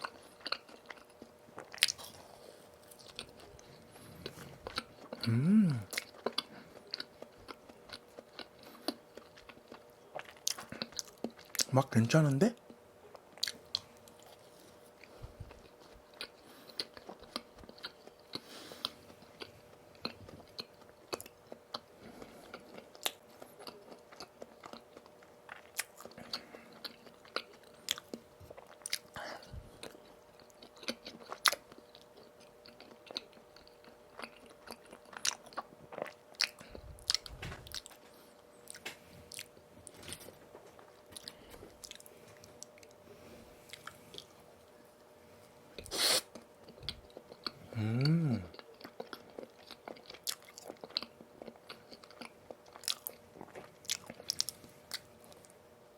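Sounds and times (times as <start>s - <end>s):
chewing and biting donuts: 0.0s - 11.7s, 12.6s - 44.6s, 45.8s - 55.6s
faint electrical hum: 0.0s - 55.9s.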